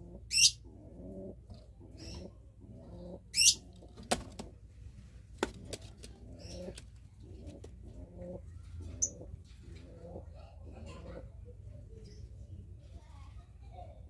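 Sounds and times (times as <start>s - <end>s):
pigeons cooing: 0.0s - 4.6s, 5.5s - 11.5s.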